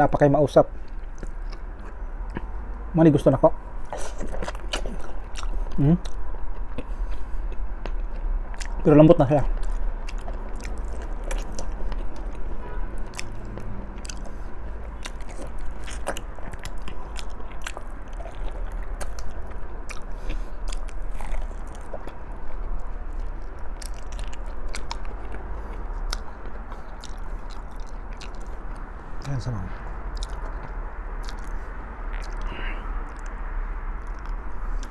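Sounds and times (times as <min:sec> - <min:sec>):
person chewing: 0:00.7 - 0:02.8, 0:03.8 - 0:34.9
wet mouth clicks and smacks: 0:30.1 - 0:33.4, 0:34.0 - 0:34.9.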